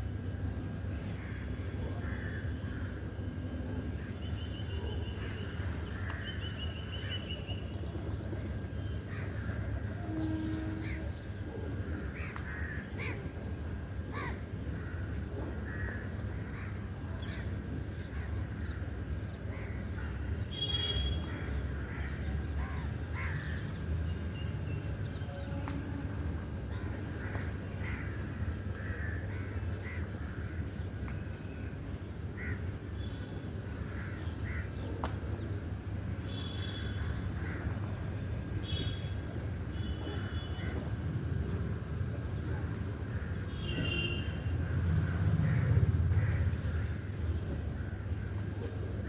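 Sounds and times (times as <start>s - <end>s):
crows cawing: 21.3s - 23.6s, 26.7s - 30.6s, 32.4s - 32.6s.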